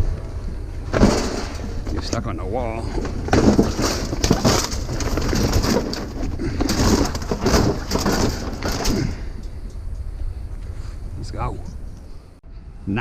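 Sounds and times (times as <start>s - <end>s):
junk rustling and knocking: 0.7s - 10.8s.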